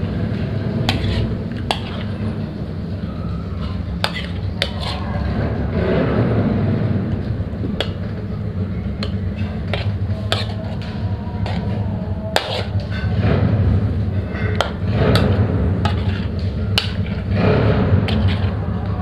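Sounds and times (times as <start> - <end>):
steady low hum: 0.0 - 19.0
spoon clinking against pot: 9.0 - 10.8.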